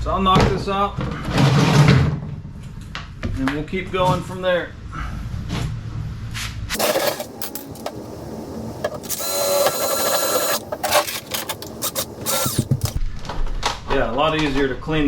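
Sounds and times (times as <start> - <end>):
power drill whirring: 8.8 - 13.0
tool handling clicks and knocks: 8.8 - 13.0.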